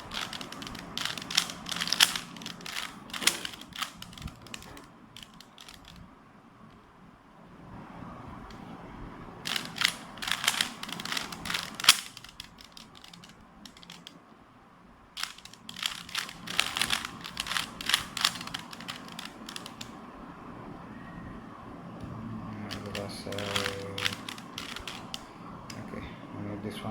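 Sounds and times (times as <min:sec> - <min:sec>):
puzzle cube clicking turns: 0:00.0 - 0:06.0, 0:09.5 - 0:14.2, 0:15.2 - 0:20.0, 0:22.7 - 0:25.3.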